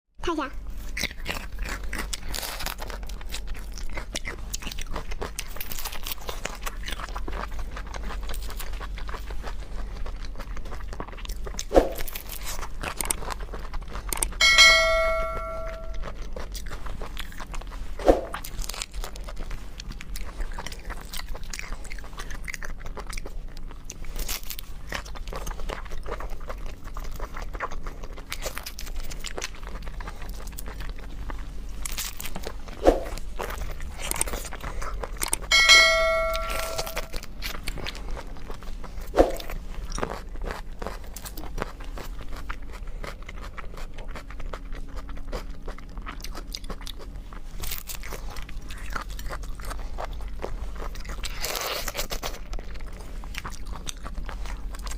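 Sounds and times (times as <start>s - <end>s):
crunching and chewing food: 0.3s - 15.0s, 15.9s - 36.0s, 36.7s - 54.9s
ringing metallic clink: 14.4s - 16.0s, 35.5s - 37.2s.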